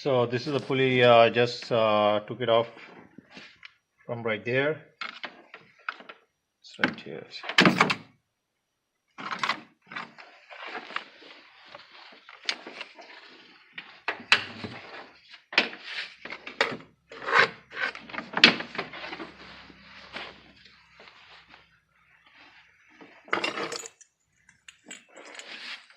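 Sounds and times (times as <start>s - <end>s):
metal scraping and rubbing: 15.8s - 21.5s.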